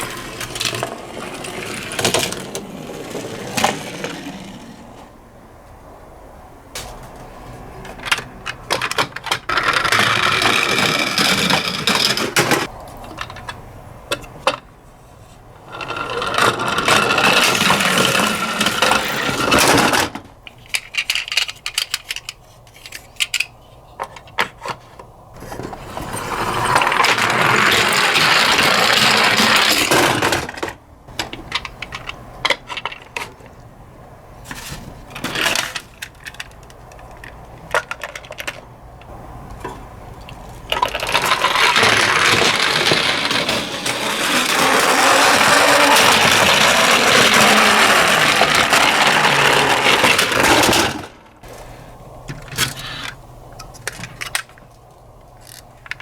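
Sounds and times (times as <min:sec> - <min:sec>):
toy cars rolling down track: 0:00.0 - 0:05.2, 0:07.8 - 0:14.7, 0:15.6 - 0:24.8, 0:25.4 - 0:33.6, 0:34.4 - 0:38.8, 0:39.5 - 0:51.7, 0:52.3 - 0:56.0.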